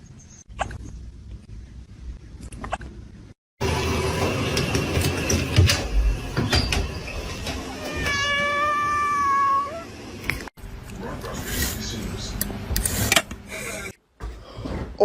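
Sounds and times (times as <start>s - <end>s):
noisy clattering: 3.6s - 7.9s
cat meowing: 7.8s - 9.9s.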